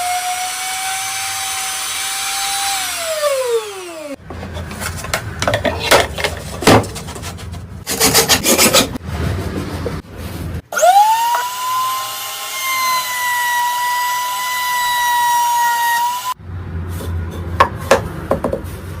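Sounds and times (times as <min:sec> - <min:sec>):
trim router motor whining: 0:00.0 - 0:04.2, 0:10.8 - 0:16.4.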